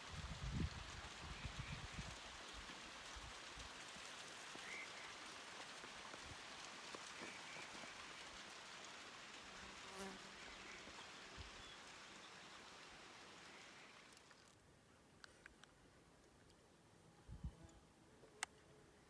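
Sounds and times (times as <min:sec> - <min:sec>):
steady hiss: 0:00.0 - 0:16.0
flying insect buzzing: 0:09.5 - 0:11.0.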